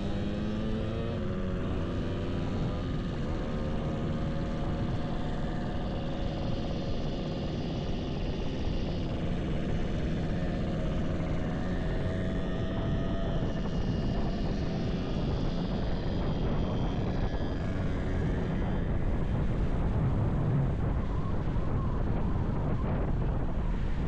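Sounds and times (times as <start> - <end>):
motorcycle engine running: 0.0 - 24.0
road noise: 0.0 - 24.0
wind noise: 0.0 - 24.0.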